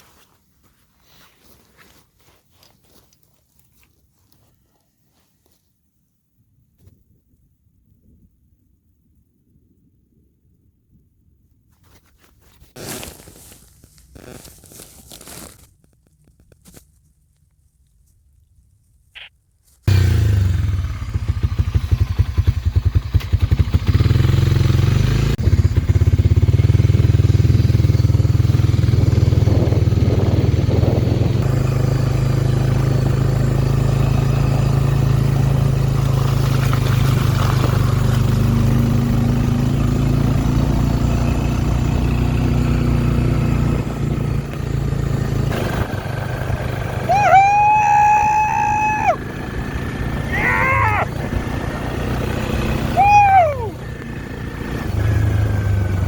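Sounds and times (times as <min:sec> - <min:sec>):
vehicle engine running: 0:19.9 - 0:56.0.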